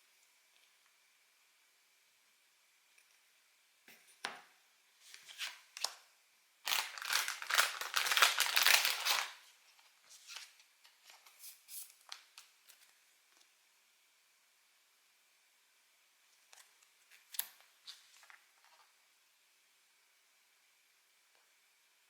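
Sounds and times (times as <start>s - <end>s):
packaging crackling: 6.6s - 9.4s
trading cards rustling: 6.7s - 9.4s.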